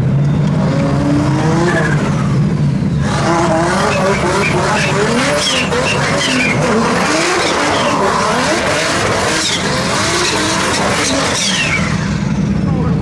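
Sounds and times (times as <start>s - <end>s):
car engine revving: 0.0s - 13.0s
tyres screeching: 3.0s - 12.2s.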